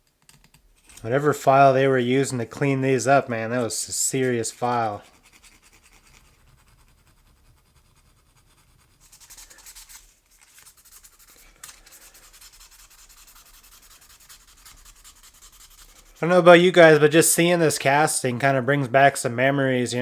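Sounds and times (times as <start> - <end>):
scratchy filing of metal: 3.9 - 16.3.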